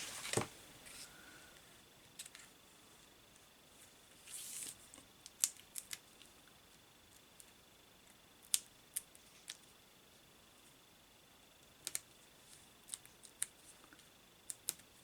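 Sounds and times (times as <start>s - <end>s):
paper rustling: 0.0s - 0.5s.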